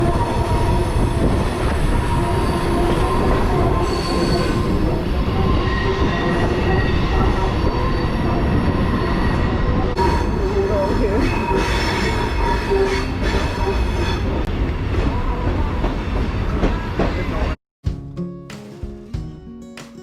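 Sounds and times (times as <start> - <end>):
train rumbling on rails: 0.0 - 17.6
high-pitched wheel squeal: 1.9 - 14.5.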